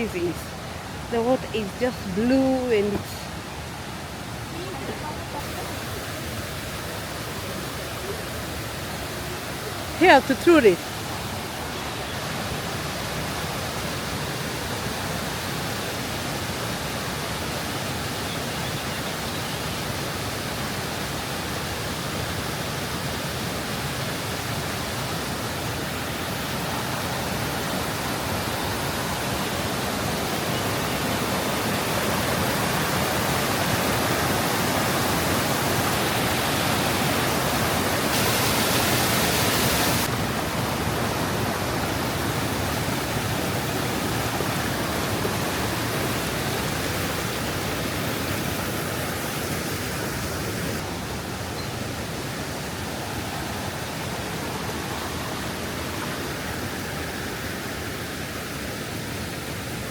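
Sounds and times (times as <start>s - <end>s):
waterfall rushing: 0.0s - 59.9s.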